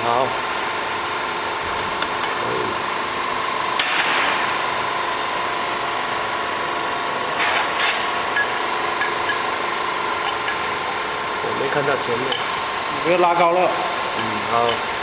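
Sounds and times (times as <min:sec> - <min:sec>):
tube bending machine motor hum: 0:00.0 - 0:15.0
sharp metallic knock: 0:03.8 - 0:04.6.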